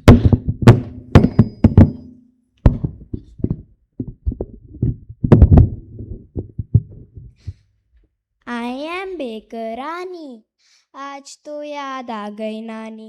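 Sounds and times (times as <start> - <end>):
irregular knocks and thumps: 0.0 - 8.0.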